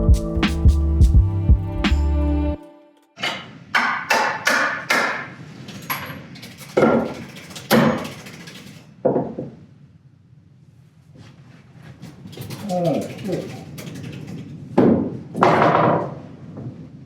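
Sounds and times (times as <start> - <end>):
hammer blows ringing: 3.2 - 5.4.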